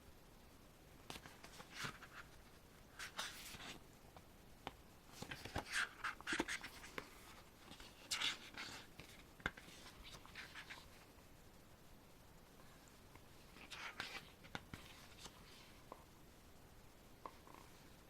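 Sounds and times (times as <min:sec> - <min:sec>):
pages turning: 0:01.1 - 0:02.3, 0:05.1 - 0:10.9, 0:13.5 - 0:15.7.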